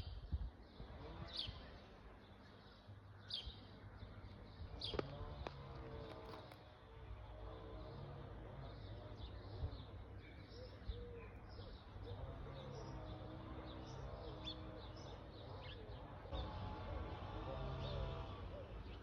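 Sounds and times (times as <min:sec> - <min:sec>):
small birds chirping: 0:00.0 - 0:19.0.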